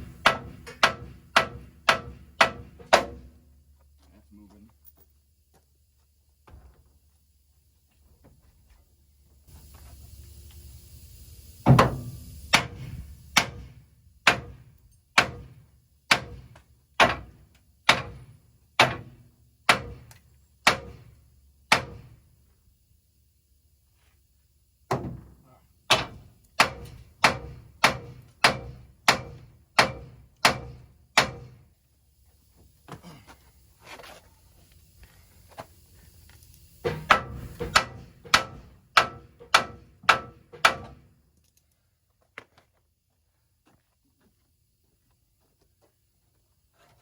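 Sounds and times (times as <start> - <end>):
hammer blows on steel bumper: 0.0 - 3.4, 11.6 - 22.2, 25.9 - 31.6, 36.8 - 41.1.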